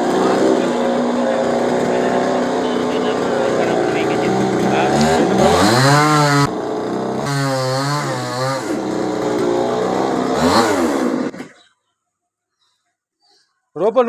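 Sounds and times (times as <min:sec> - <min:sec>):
chainsaw engine revving: 0:00.0 - 0:11.6.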